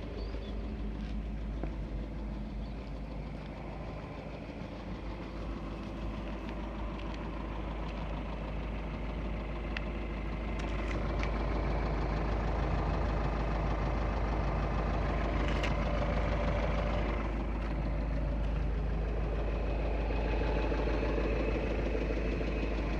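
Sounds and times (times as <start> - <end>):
knocking diesel engine running: 0.0 - 22.9.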